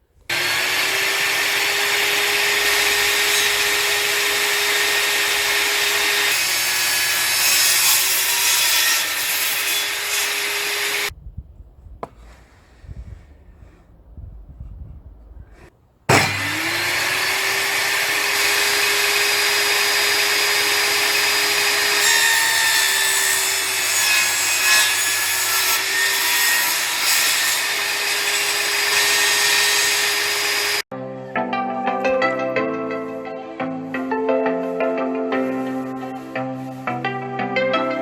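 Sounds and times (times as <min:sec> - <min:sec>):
saw blade cutting wood: 0:00.3 - 0:11.1, 0:12.0 - 0:13.8, 0:15.4 - 0:30.8
table saw motor whining: 0:00.3 - 0:11.1, 0:16.1 - 0:30.8
music: 0:30.9 - 0:38.0.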